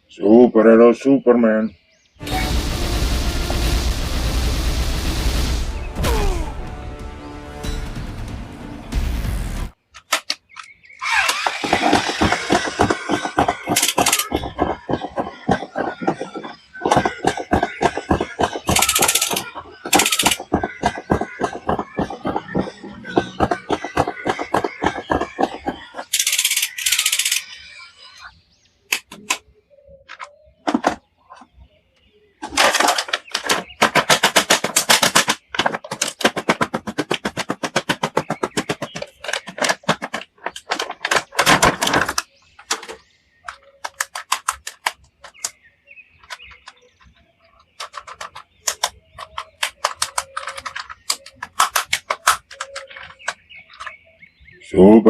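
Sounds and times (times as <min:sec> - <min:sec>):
plastic clicks and crackles: 0:32.4 - 0:45.6, 0:46.2 - 0:54.1.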